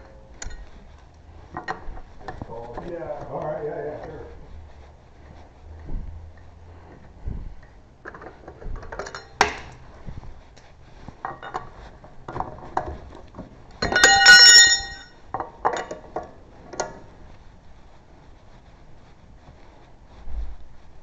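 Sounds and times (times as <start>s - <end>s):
metal bolts and tools clinking: 8.0s - 9.8s, 11.2s - 12.5s, 13.8s - 17.0s
ringing metallic clank: 13.8s - 15.2s.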